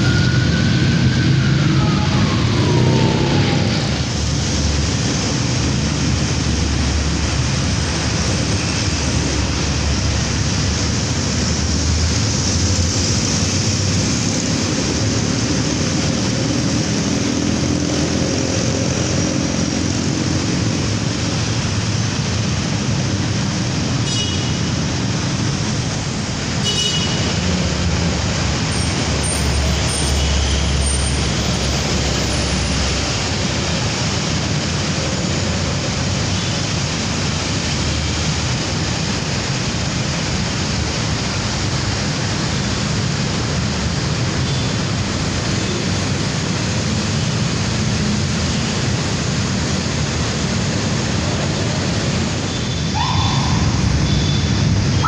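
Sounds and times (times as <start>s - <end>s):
siren tone sliding down: 0.0s - 4.1s
road traffic rumble: 0.0s - 55.0s.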